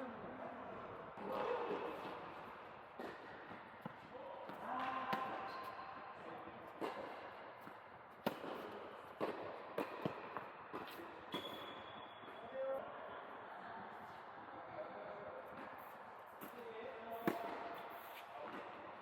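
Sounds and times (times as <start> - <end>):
tennis balls struck by rackets: 1.2 - 11.8, 17.2 - 18.8
balls bouncing on hard court: 1.2 - 12.5, 15.5 - 18.8.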